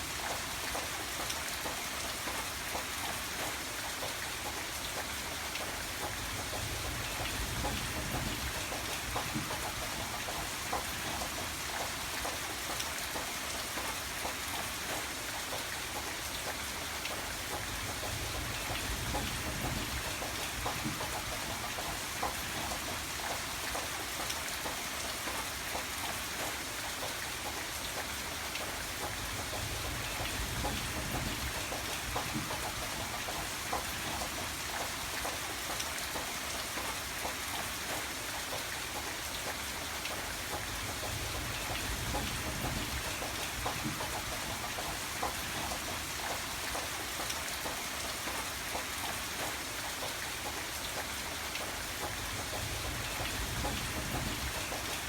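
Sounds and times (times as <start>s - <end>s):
rain pattering: 0.0s - 55.0s.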